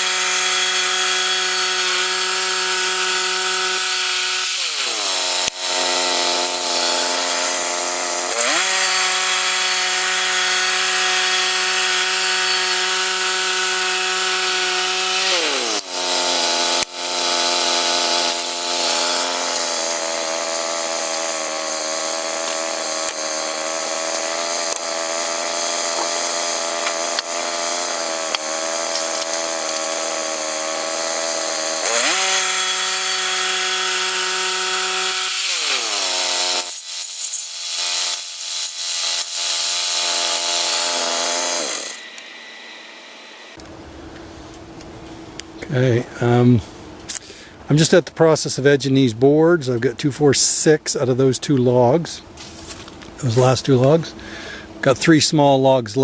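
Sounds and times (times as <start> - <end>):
sawmill engine sawing lumber: 0.0 - 43.6.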